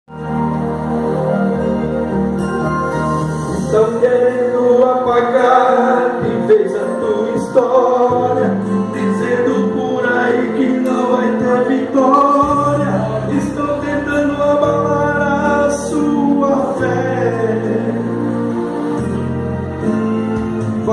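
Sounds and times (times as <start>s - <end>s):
sustained instrumental accompaniment: 0.1s - 20.9s
person singing gospel: 3.5s - 18.4s.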